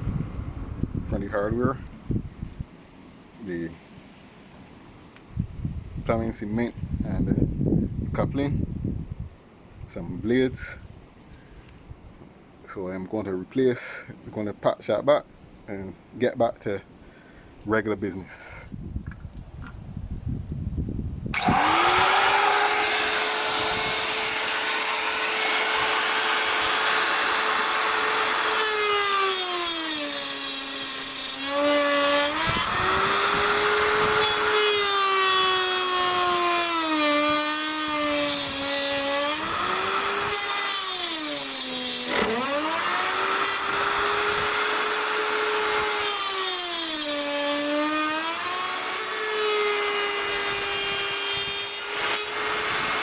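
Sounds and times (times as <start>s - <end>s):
electric power tool motor: 21.3s - 53.0s.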